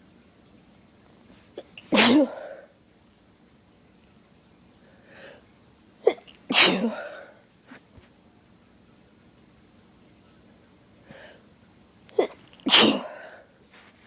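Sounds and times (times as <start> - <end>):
person sneezing: 1.9 - 2.6, 6.1 - 7.3, 12.2 - 13.4
faint in-breath: 4.8 - 5.4, 11.0 - 11.5.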